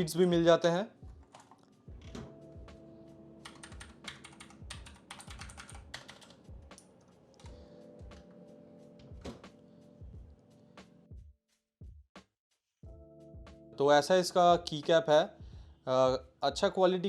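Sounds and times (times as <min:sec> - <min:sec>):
clicky mechanical keyboard typing: 0:01.2 - 0:02.2, 0:03.4 - 0:07.5.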